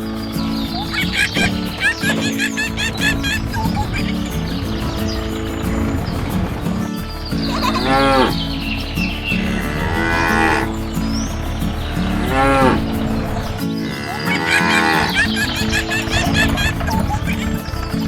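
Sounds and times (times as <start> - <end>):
light background music: 0.0 - 18.0
cow mooing: 9.6 - 10.7, 14.0 - 15.2.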